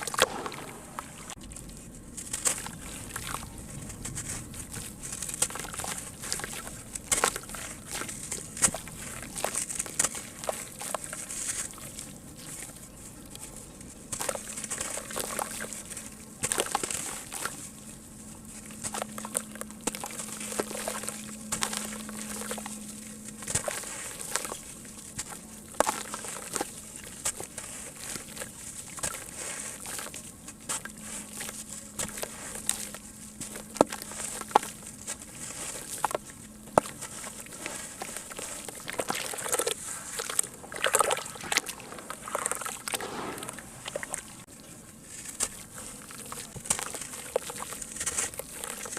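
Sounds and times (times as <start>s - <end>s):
lumps crumbling in water: 0.0s - 12.7s, 23.4s - 44.5s
water sloshing: 0.0s - 12.8s, 14.1s - 48.9s.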